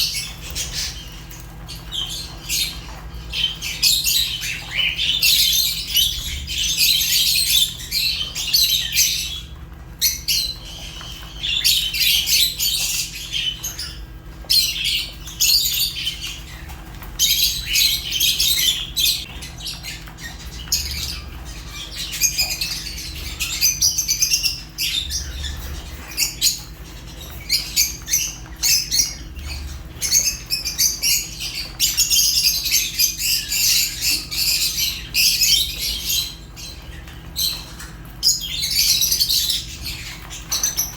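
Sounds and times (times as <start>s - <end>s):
birds chirping and squawking: 0.0s - 40.9s.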